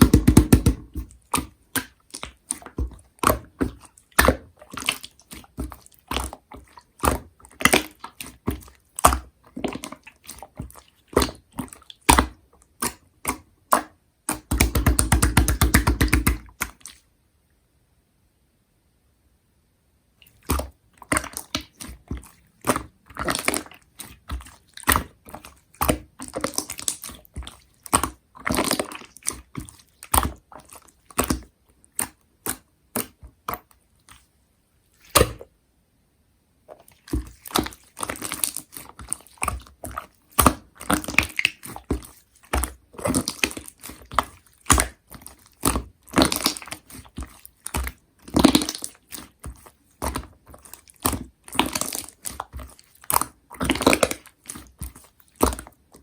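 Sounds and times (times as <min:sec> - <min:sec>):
slime squeezed by hand: 0:36.7 - 0:56.0.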